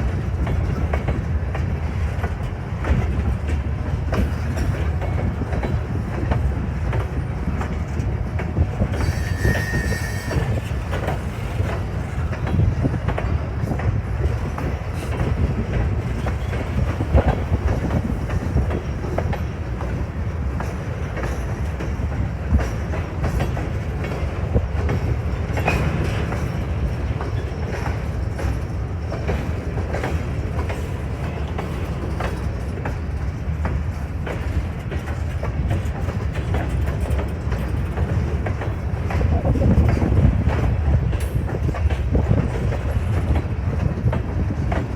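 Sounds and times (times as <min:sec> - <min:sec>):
freight train rumbling: 0:00.0 - 0:44.9
high wheel squeal: 0:08.9 - 0:11.2.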